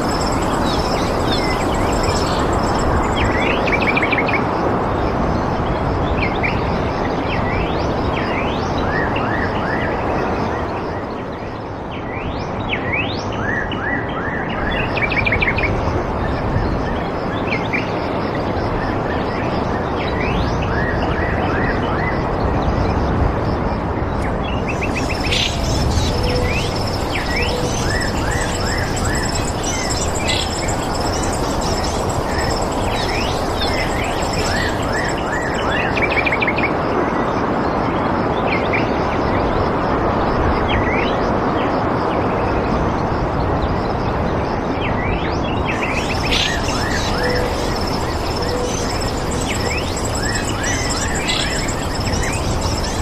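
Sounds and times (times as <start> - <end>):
birds chirping and calling: 0.0 - 3.6, 24.7 - 36.2, 45.7 - 53.0
thin high steady tone: 0.0 - 4.0, 24.7 - 36.4, 45.7 - 53.0
continuous rushing background: 0.0 - 53.0.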